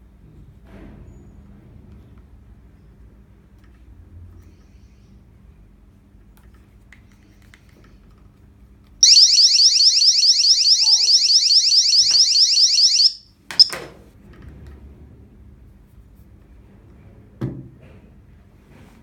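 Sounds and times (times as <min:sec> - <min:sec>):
high-pitched electronic alarm tone: 0:09.0 - 0:13.7.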